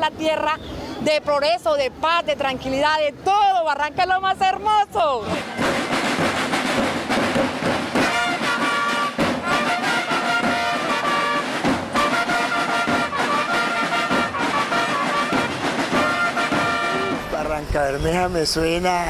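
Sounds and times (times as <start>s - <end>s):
brass music over steady beat: 5.3s - 17.6s.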